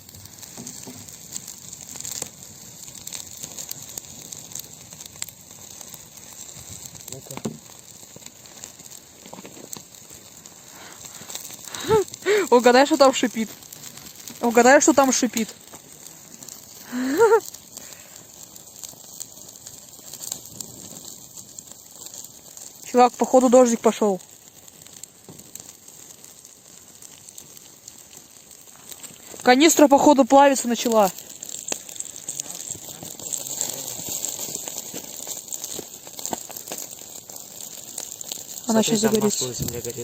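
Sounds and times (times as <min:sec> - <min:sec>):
campfire crackling and popping: 0:00.0 - 0:40.0
steady high hiss: 0:38.6 - 0:40.0.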